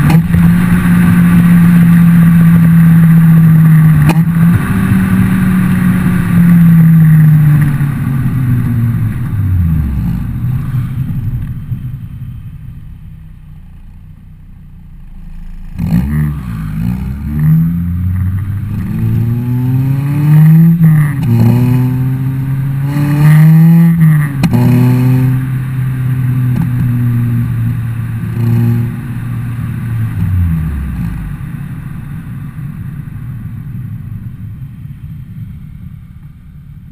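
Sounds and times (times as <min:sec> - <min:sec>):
car engine revving: 0:00.0 - 0:36.2
exhaust pops: 0:03.8 - 0:04.7.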